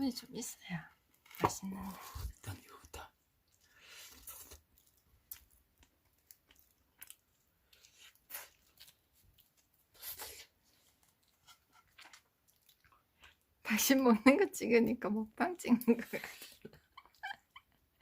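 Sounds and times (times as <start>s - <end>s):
potato skin tearing and crackling: 3.8s - 12.2s.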